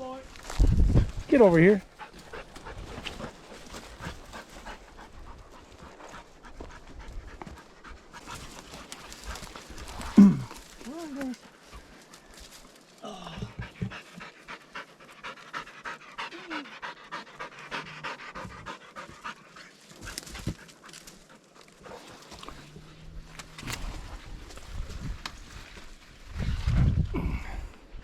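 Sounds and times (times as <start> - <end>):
dog panting: 1.8 - 10.0, 13.6 - 22.0.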